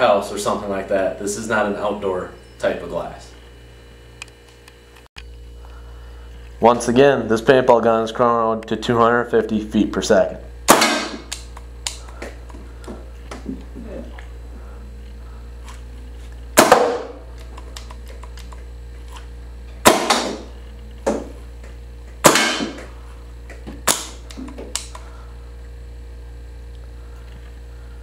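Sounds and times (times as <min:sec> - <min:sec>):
paintball shots hitting glass: 0:10.7 - 0:11.3, 0:16.6 - 0:17.1, 0:19.8 - 0:20.5, 0:22.2 - 0:22.8.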